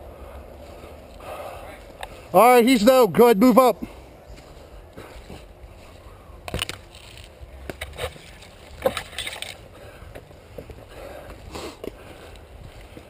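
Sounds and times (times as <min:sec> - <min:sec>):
twigs snapping and rustling: 0:06.4 - 0:09.6.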